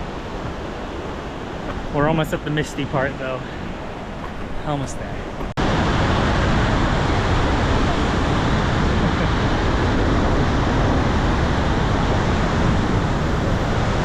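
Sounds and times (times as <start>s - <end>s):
waterfall rushing: 0.0s - 14.0s
wind buffeting microphone: 0.0s - 14.0s.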